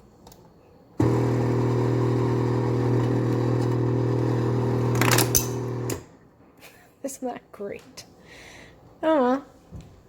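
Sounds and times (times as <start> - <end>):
ice maker buzzing hum: 1.0 - 6.1.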